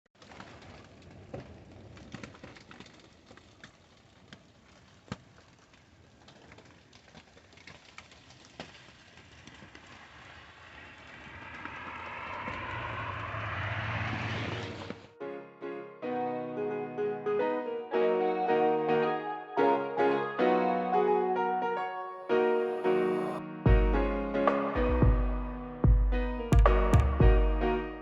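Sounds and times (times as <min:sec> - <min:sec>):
rushing noise with low hum: 0:10.1 - 0:15.1.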